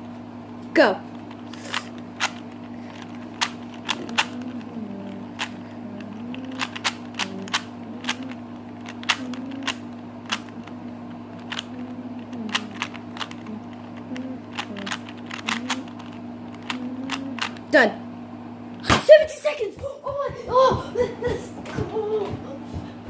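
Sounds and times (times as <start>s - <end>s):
puzzle cube clicking as twisted: 1.4s - 10.7s, 11.4s - 17.6s.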